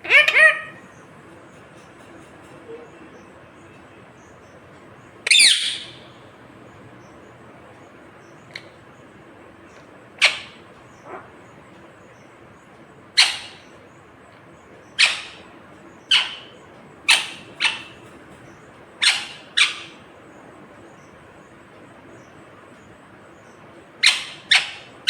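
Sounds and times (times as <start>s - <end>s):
parakeet screeching calls: 0.0s - 0.9s, 5.2s - 6.1s, 10.2s - 11.3s, 13.2s - 13.7s, 15.0s - 18.1s, 19.0s - 20.0s, 24.0s - 25.0s.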